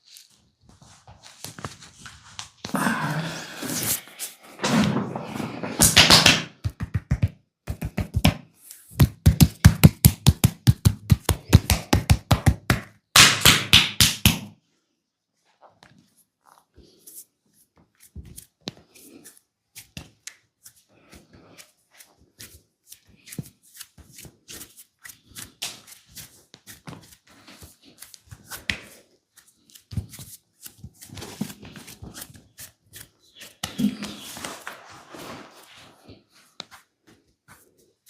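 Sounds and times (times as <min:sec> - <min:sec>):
hands patting skin: 0:05.7 - 0:14.5, 0:17.1 - 0:34.8.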